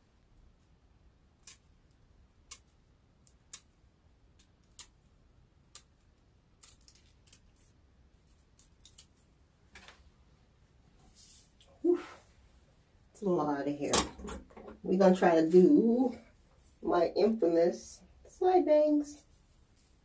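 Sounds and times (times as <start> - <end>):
scissors snipping: 1.4 - 3.7, 4.3 - 5.0.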